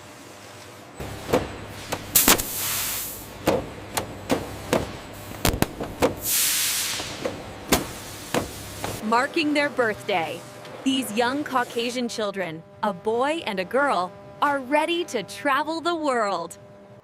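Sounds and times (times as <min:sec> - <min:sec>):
machinery clacks and knocks: 0:01.0 - 0:02.5, 0:03.3 - 0:06.3
low steady machine hum: 0:01.0 - 0:06.2, 0:07.0 - 0:17.0
air hissing blasts: 0:01.0 - 0:09.0.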